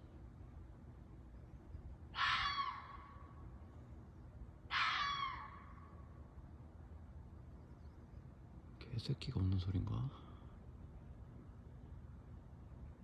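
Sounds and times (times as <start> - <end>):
animal crying: 2.1 - 3.2, 4.7 - 5.9.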